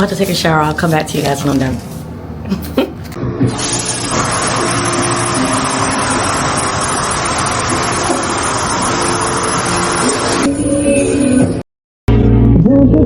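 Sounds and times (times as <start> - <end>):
shower water running: 3.6 - 10.5.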